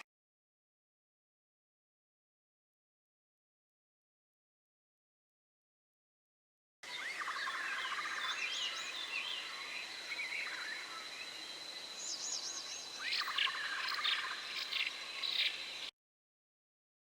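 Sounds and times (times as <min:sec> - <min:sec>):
birds chirping and whistling: 0:06.9 - 0:11.0, 0:12.0 - 0:15.6.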